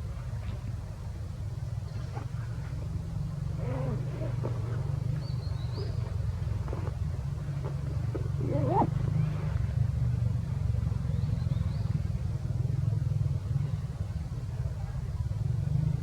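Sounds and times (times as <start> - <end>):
macaque calls: 8.4 - 8.9.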